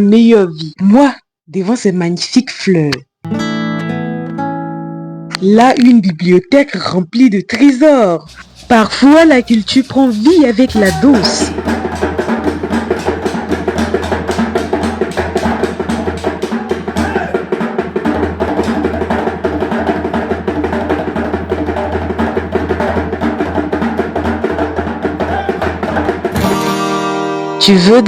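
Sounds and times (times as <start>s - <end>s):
fast drumming: 8.2s - 26.7s.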